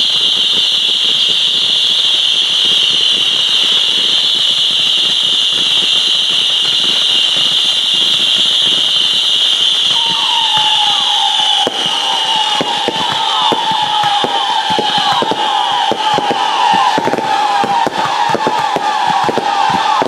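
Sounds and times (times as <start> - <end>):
fireworks crackling: 0.0 - 20.0
fireworks whistling: 0.0 - 20.0.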